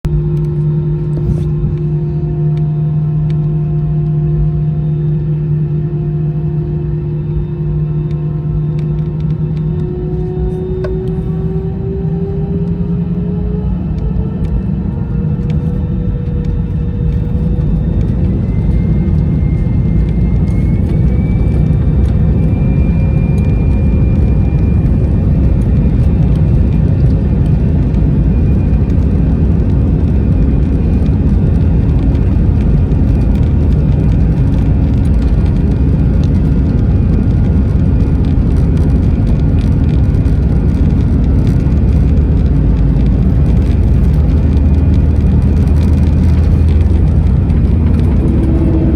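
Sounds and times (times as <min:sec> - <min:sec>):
jet engine whine: 0:00.0 - 0:48.9
loud steady cabin rumble: 0:00.0 - 0:48.9.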